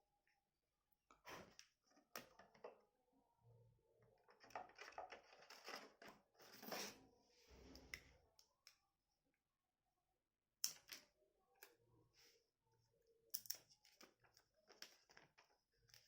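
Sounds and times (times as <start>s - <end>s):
small clicks and rustles: 4.2s - 7.0s, 13.4s - 16.0s.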